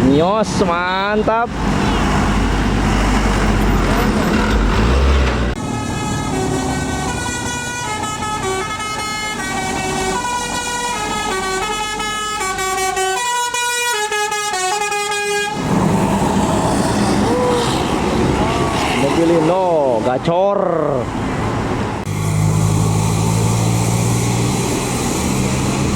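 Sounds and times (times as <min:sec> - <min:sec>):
engine and road noise: 0:00.0 - 0:25.9
bus horn playing a tune: 0:05.6 - 0:15.6.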